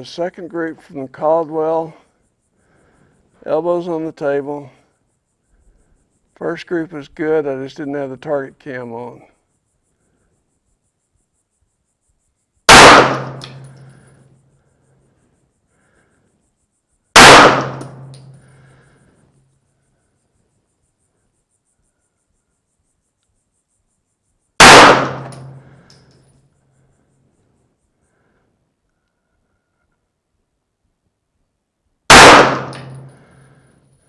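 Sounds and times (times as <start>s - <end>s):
pistol shots: 12.7s - 13.8s, 17.2s - 18.2s, 24.6s - 25.7s, 32.1s - 33.2s.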